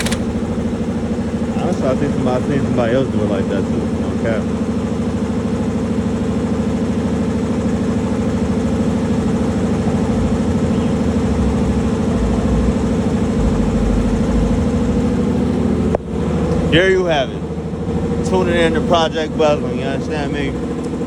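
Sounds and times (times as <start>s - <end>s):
diesel truck engine idling: 0.0s - 21.0s
deep low rumble: 11.3s - 15.4s.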